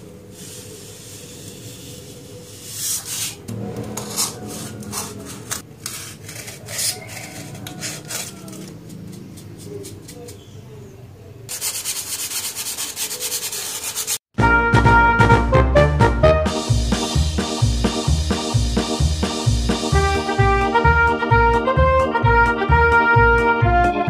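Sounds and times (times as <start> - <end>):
scraping styrofoam: 0.0 - 10.6, 11.5 - 14.3.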